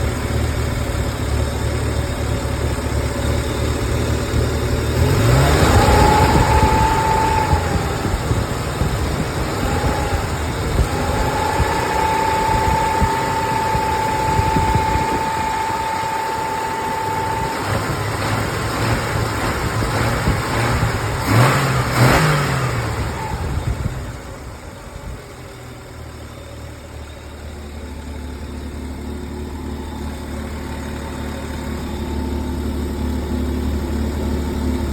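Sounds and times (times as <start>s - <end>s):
steady high whine: 0.0s - 21.2s
engine idling and revving: 0.0s - 34.9s
engine rattle: 0.0s - 34.9s.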